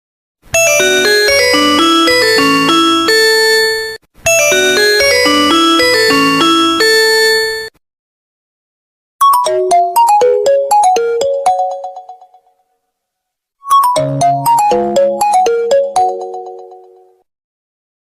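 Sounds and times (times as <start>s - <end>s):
mobile phone ringtone: 0.5s - 7.7s, 9.2s - 12.4s, 13.6s - 17.0s.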